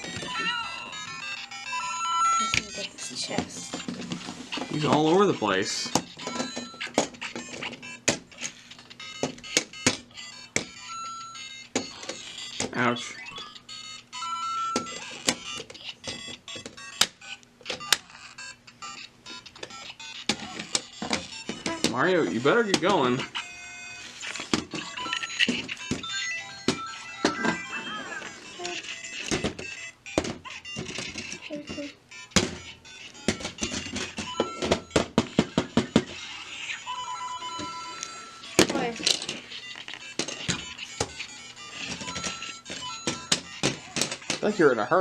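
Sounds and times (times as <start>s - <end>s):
electronic game sound effects: 24.2s - 29.2s.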